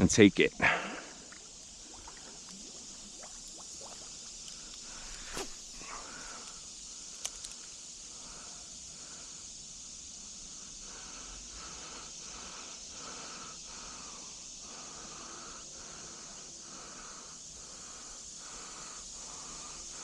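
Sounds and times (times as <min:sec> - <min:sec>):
creek water running: 0:00.0 - 0:06.7
faint clicks: 0:07.2 - 0:07.8.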